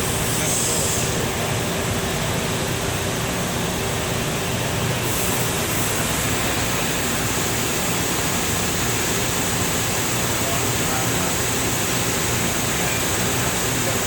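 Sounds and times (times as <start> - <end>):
steady hum: 0.0 - 14.0
grinder machine running: 5.0 - 14.0.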